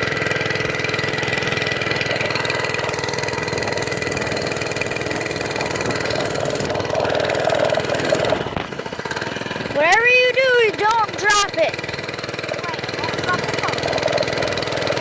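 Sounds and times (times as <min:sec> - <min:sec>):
engine running with rapid pulsing: 0:00.0 - 0:15.0.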